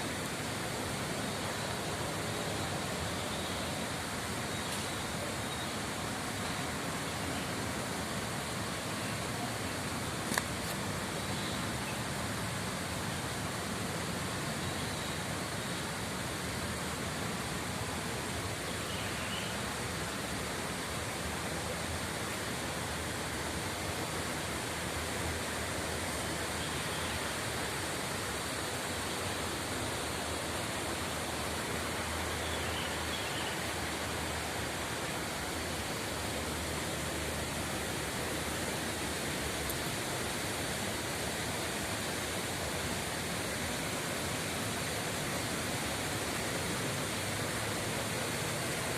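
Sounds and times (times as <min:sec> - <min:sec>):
flowing rippling water: 0:00.0 - 0:48.9.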